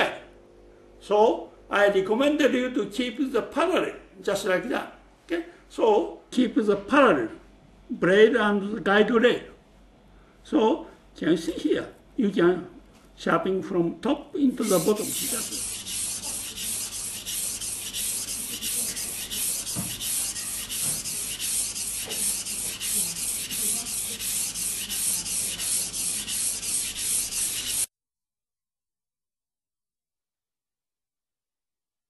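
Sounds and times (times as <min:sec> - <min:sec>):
knife rasping on whetstone: 0:14.6 - 0:27.9.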